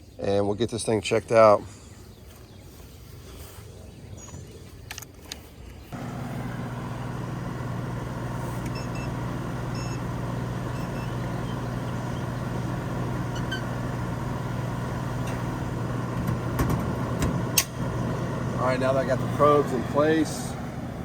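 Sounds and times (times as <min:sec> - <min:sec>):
compressor hum: 0:05.8 - 0:21.0
condenser fan whoosh: 0:06.0 - 0:21.0.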